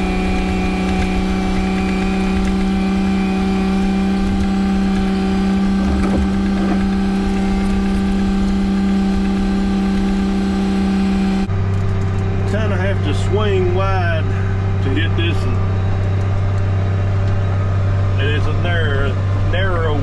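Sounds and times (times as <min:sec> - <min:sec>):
tractor engine droning: 0:00.0 - 0:20.0.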